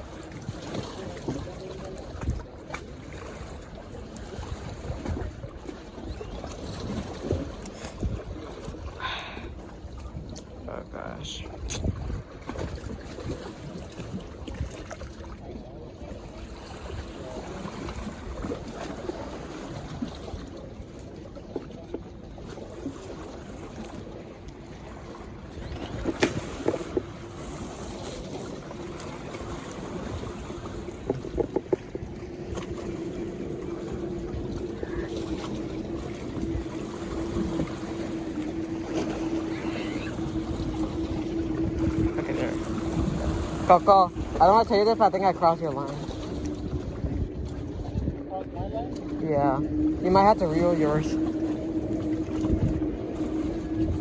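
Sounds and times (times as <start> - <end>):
wind rumbling on microphone: 0.0 - 54.0
sea water washing against rocks: 22.1 - 54.0
steady hum: 25.9 - 54.0.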